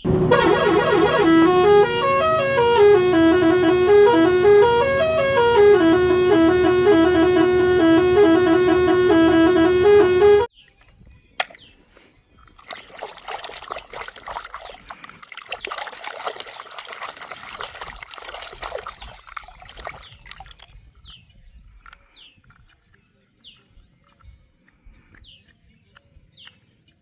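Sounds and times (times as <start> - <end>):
musical horn playing tune: 0.0 - 10.5
water trickling and splashing: 12.3 - 22.9.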